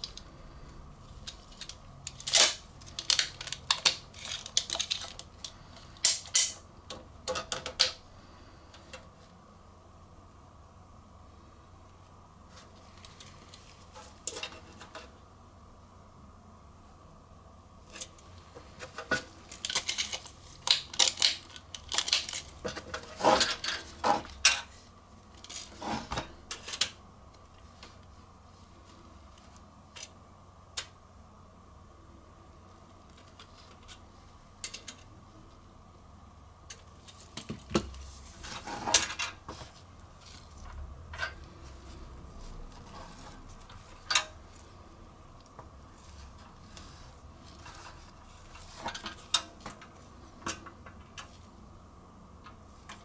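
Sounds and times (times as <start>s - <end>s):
scraping rustle: 36.8s - 45.0s.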